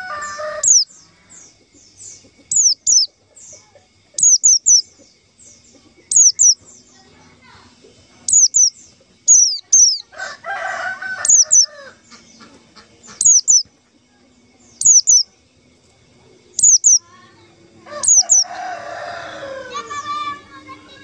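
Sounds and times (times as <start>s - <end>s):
rooster crowing: 0.0s - 1.4s, 9.7s - 12.2s, 17.8s - 20.7s
high thin bird calls: 0.6s - 0.9s, 2.0s - 3.6s, 4.2s - 5.0s, 6.1s - 6.7s, 8.3s - 10.1s, 11.2s - 13.7s, 14.8s - 15.3s, 16.6s - 17.1s, 18.0s - 18.5s.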